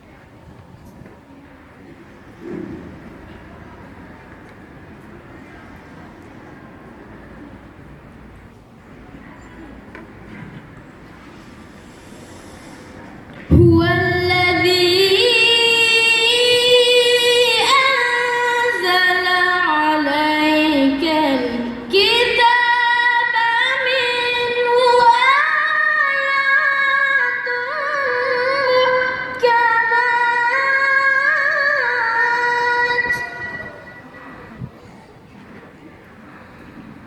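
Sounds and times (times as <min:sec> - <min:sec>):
boy chanting melodically: 0:13.5 - 0:34.1.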